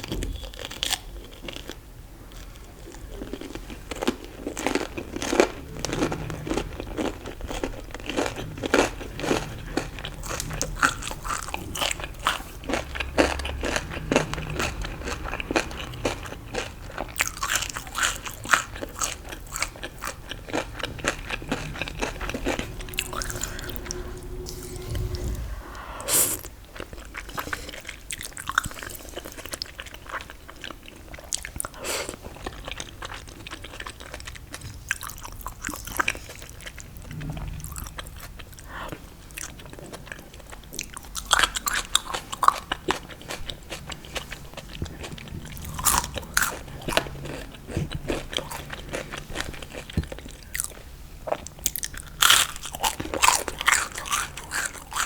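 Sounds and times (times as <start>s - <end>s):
crunching fried food: 0.4s - 23.9s, 39.4s - 55.0s
quiet chewing: 0.4s - 25.6s.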